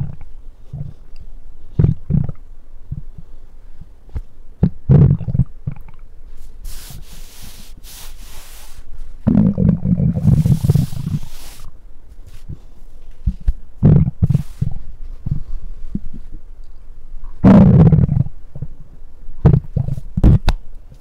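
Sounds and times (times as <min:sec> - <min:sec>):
soft hiss: 0:00.0 - 0:04.7, 0:05.3 - 0:17.4
stomach growling: 0:01.8 - 0:03.2, 0:04.6 - 0:06.1, 0:09.2 - 0:11.4, 0:13.8 - 0:16.2, 0:17.2 - 0:18.8, 0:19.4 - 0:20.4.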